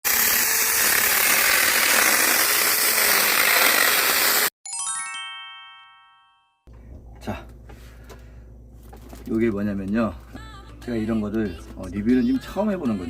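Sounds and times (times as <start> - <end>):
electric chainsaw cutting wood: 0.0 - 4.5
bell-like chime notes: 4.6 - 6.7.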